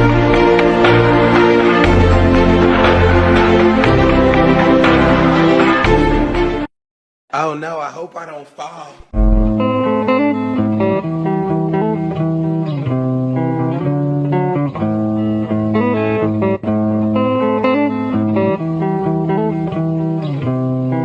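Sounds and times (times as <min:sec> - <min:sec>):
guitar plucked and strummed: 0:09.2 - 0:21.0.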